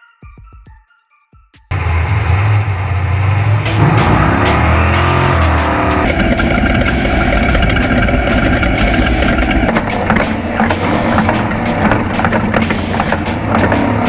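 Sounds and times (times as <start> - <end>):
off-road vehicle engine: 1.7 - 14.0
rattling and knocking: 3.8 - 14.0.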